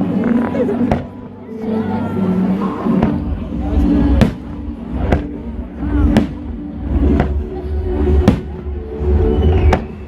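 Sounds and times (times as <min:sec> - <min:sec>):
music: 0:00.0 - 0:10.0
fireworks bangs: 0:04.1 - 0:05.4, 0:06.0 - 0:06.5, 0:08.2 - 0:08.6.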